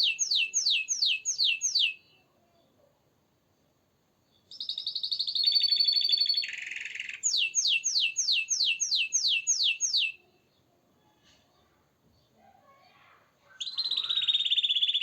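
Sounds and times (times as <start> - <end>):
canary singing: 0.0 - 2.2, 4.5 - 10.4, 13.5 - 15.0.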